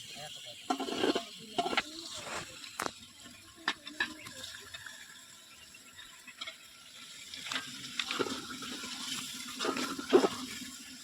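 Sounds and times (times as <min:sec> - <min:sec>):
water splashing and sloshing: 0:07.3 - 0:11.0.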